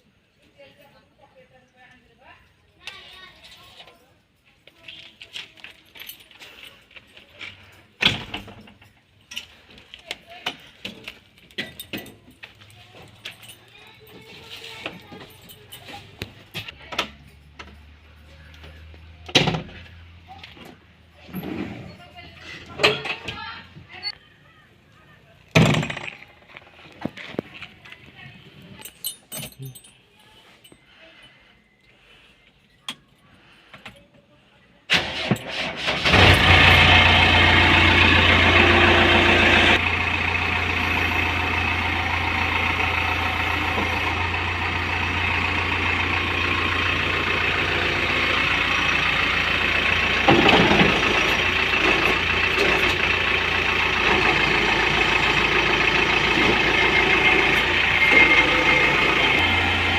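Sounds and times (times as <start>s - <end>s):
diesel engine starting and running: 5.6s - 24.2s, 34.9s - 59.9s.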